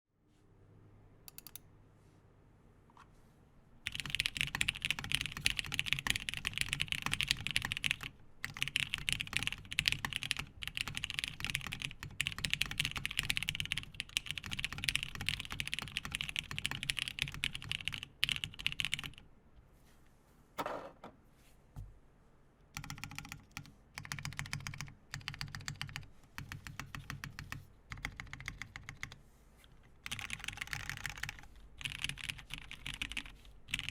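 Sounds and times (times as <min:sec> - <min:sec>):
mechanical keyboard typing: 0:01.3 - 0:01.6, 0:03.9 - 0:19.2, 0:22.8 - 0:29.2, 0:30.0 - 0:33.9.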